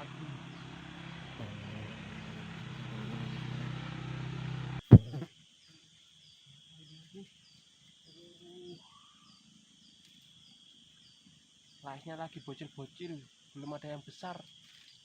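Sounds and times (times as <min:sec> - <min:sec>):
low droning hum: 0:00.0 - 0:05.1
faint low calls: 0:00.0 - 0:05.3
insects trilling and chirping: 0:00.0 - 0:15.0.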